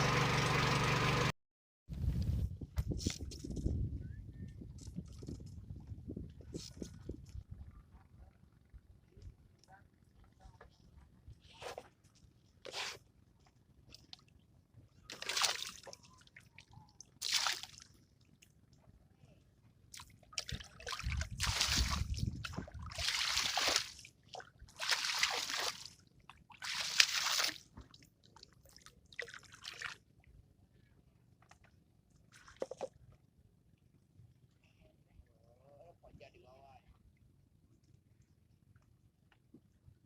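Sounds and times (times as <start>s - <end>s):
water splashing and sloshing: 13.4s - 18.5s, 19.9s - 30.4s, 32.2s - 33.2s.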